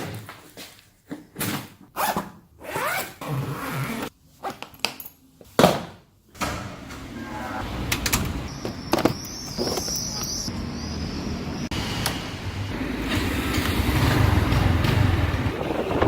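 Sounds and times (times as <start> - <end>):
zipper pulled: 2.0 - 4.1.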